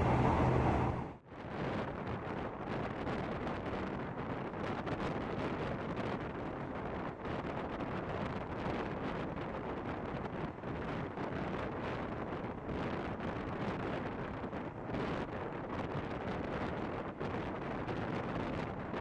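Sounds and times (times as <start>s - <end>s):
moving train running: 0.0s - 1.2s
wind buffeting microphone: 0.0s - 19.0s.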